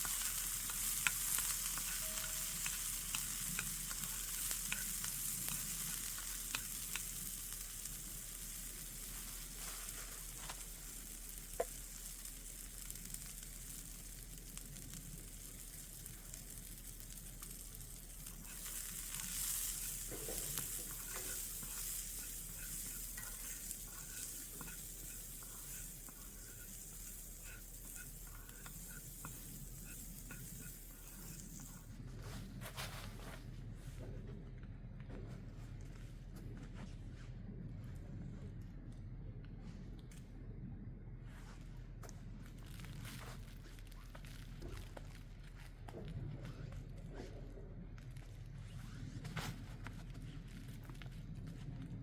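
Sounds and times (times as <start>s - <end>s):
food sizzling in a pan: 0.0s - 31.9s.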